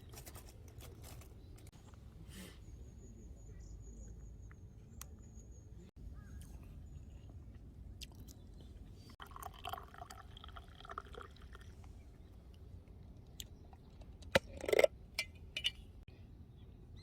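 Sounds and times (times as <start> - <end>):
liquid poured into a cup: 9.2 - 11.8.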